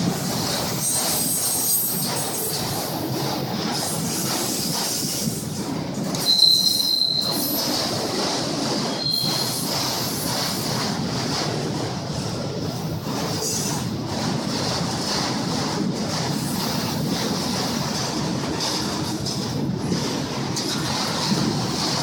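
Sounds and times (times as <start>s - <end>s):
train wheels rumbling on rails: 0.0s - 22.0s
high-pitched wheel squeal: 6.2s - 7.6s, 8.9s - 9.6s.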